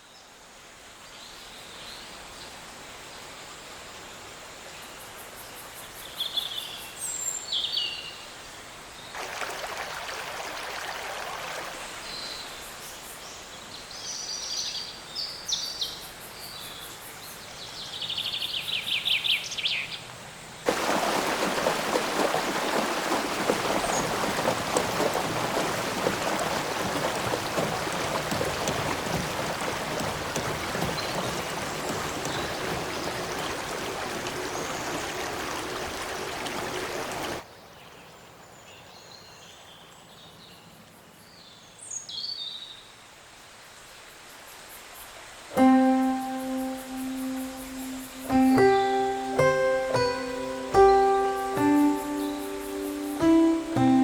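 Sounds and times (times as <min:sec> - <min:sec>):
stream water rushing: 0:09.0 - 0:12.8, 0:20.7 - 0:37.4, 0:45.1 - 0:54.0
birds chirping and trilling: 0:22.7 - 0:37.4, 0:45.8 - 0:54.0
faint background hiss: 0:37.5 - 0:54.0.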